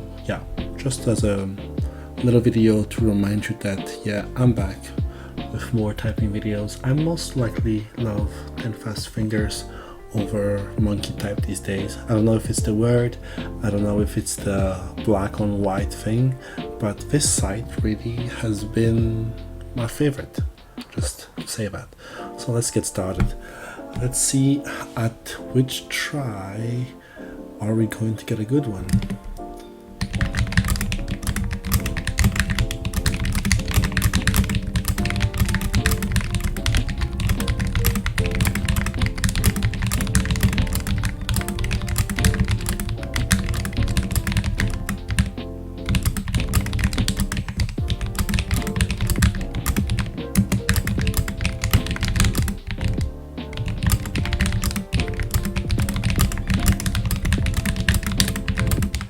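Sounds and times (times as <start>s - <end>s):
background music: 0.0s - 59.0s
typing on mechanical keyboard: 28.9s - 29.2s, 30.0s - 59.0s.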